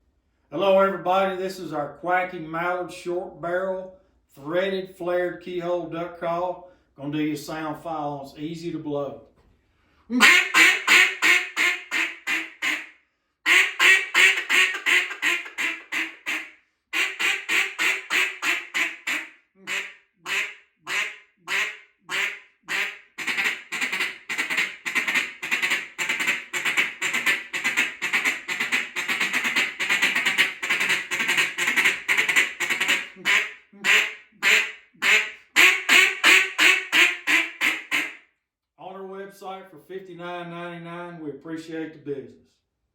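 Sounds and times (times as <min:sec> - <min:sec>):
duck call quacks: 0:10.1 - 0:12.9, 0:13.5 - 0:38.2.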